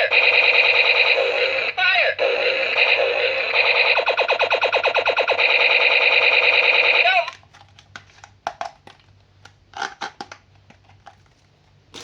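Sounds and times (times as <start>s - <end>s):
rapid electronic pulsing: 0.0s - 7.3s.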